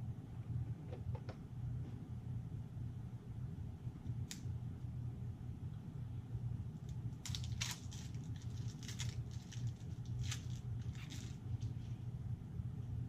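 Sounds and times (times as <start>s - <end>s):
steady low hum: 0.0s - 13.0s
cards and packaging crinkling: 7.2s - 11.8s.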